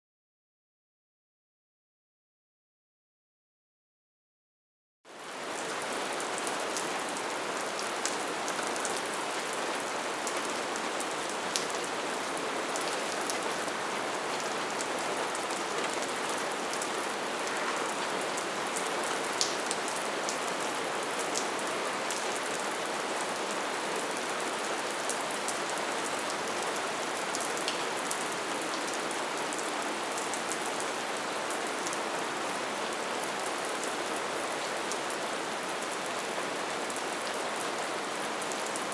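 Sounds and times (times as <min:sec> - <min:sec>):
light rain falling: 0:05.1 - 0:38.9.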